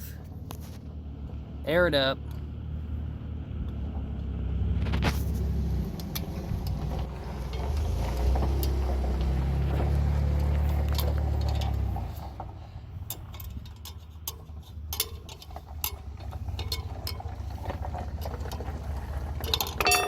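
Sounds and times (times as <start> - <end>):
vehicle engine idling: 0.0 - 20.0
small metallic clicks: 10.3 - 18.7.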